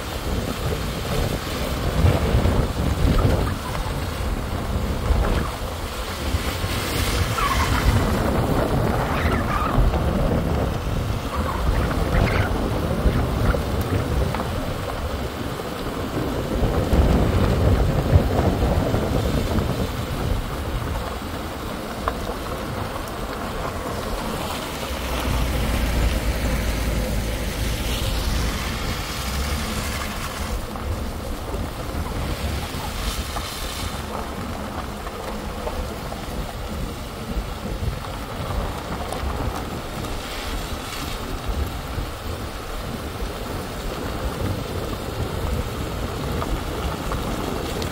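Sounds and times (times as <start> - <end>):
vehicle tyres and engine rumble: 0.0 - 47.9
wind noise on microphone: 0.0 - 47.9.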